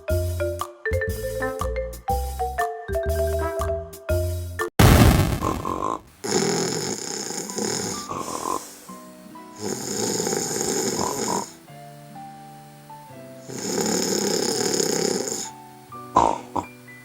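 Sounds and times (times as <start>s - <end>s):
light background music: 0.0s - 4.7s, 7.1s - 17.0s
person snoring: 5.4s - 11.7s, 13.4s - 16.8s.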